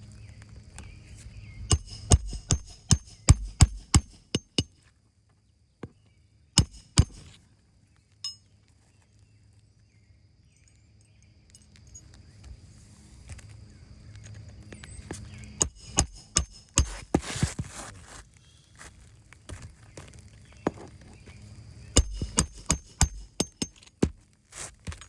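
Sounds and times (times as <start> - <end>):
sharp knocks: 1.7 - 4.7, 15.6 - 17.6, 22.0 - 24.2.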